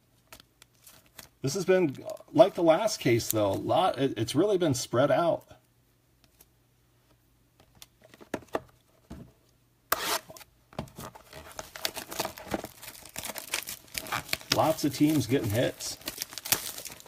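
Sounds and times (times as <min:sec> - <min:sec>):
plastic packaging clicks and rustles: 0:00.2 - 0:02.3, 0:10.8 - 0:17.0
plastic packaging crinkling: 0:11.0 - 0:17.0
plastic packaging tearing: 0:11.2 - 0:17.0.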